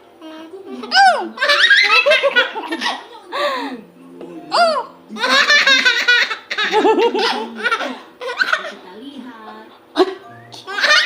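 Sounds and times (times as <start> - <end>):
baby laughing: 0.8 - 3.1, 4.5 - 8.8, 10.6 - 11.0.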